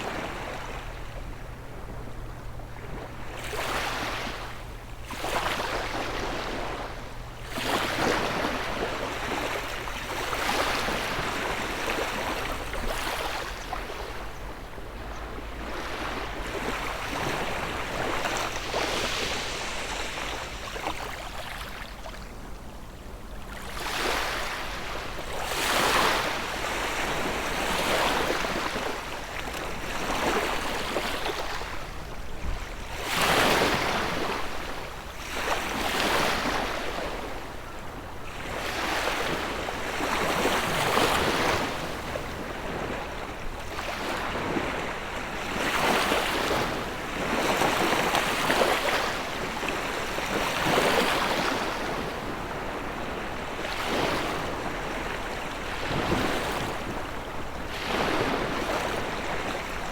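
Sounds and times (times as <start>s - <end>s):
sea waves washing onto shore: 14.9s - 22.0s.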